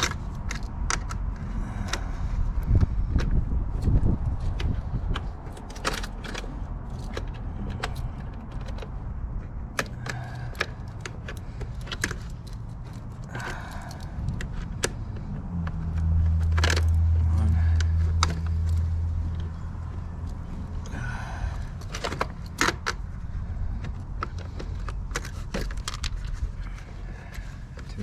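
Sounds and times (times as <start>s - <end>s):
metal clicks of hand tools: 0.0s - 2.1s, 2.7s - 21.0s.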